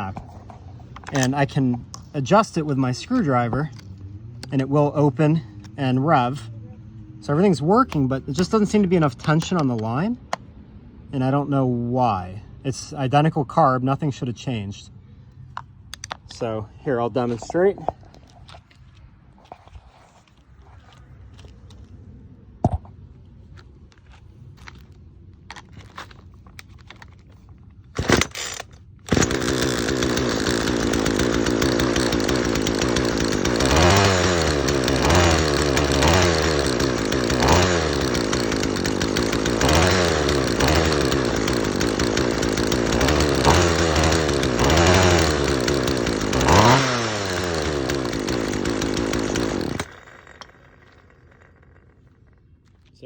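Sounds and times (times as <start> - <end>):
chainsaw pull-started: 0.0 - 6.4, 7.3 - 9.9, 27.9 - 52.8
chainsaw revving: 1.0 - 6.4, 7.2 - 9.7, 28.0 - 52.2.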